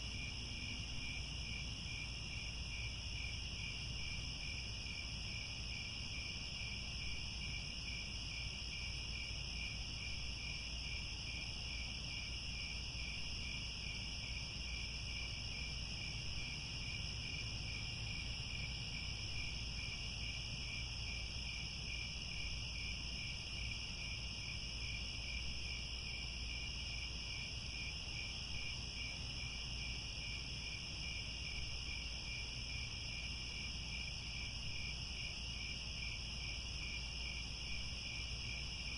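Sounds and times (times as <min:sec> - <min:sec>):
crickets chirping: 0:00.0 - 0:38.9.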